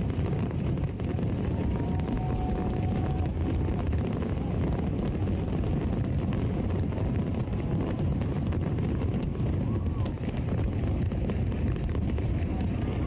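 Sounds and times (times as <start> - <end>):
fireworks bursts rumbling: 0.0 - 13.0
fireworks crackling pops: 0.0 - 13.0
faint firework whistles: 0.8 - 5.2.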